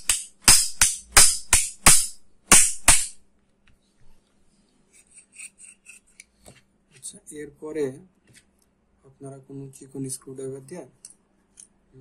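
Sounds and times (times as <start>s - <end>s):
sharp metallic taps: 0.0s - 3.2s.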